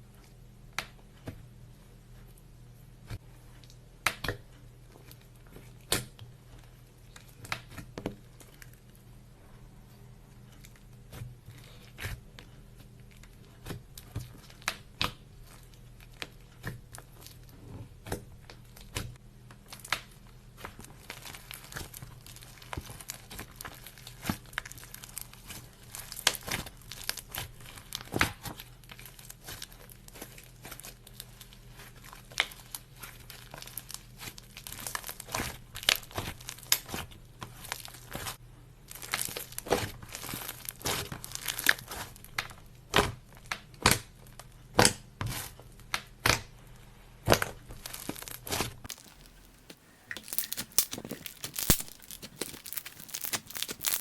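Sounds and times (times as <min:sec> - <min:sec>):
slime crackling and popping: 0:19.7 - 0:37.0, 0:38.9 - 0:42.5, 0:47.4 - 0:54.0.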